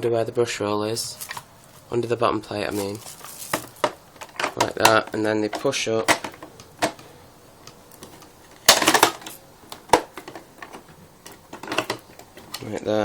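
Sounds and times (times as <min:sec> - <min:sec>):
plastic clatter: 0:01.1 - 0:02.0, 0:02.7 - 0:12.8
hard plastic clicks: 0:03.7 - 0:12.7.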